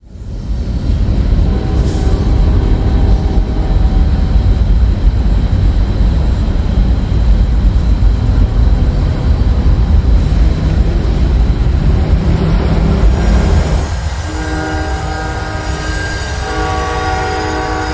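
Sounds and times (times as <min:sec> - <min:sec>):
loud low rumble: 0:00.9 - 0:15.0.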